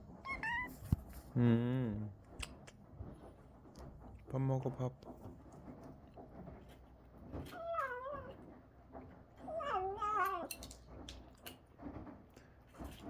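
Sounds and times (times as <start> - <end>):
cat murmuring while eating: 7.4 - 8.6, 9.4 - 10.7.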